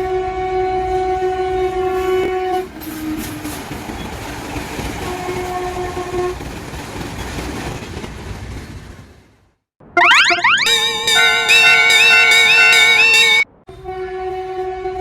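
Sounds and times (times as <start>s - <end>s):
passing train rumble and clatter: 0.1s - 9.5s.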